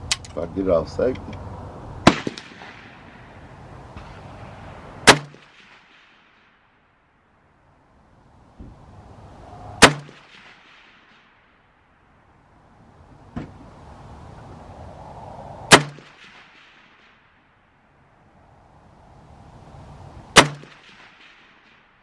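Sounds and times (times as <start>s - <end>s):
fainter gunshot: 2.0s - 3.0s, 5.0s - 6.1s, 9.8s - 10.8s, 15.7s - 16.7s, 20.4s - 21.4s
rifle shots with echo: 2.0s - 3.4s, 4.0s - 6.7s, 9.8s - 11.4s, 15.7s - 17.2s, 20.4s - 22.0s.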